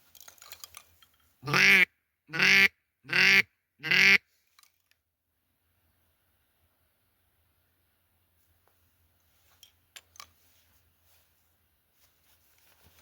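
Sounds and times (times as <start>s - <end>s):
duck call quacks: 1.4s - 4.3s.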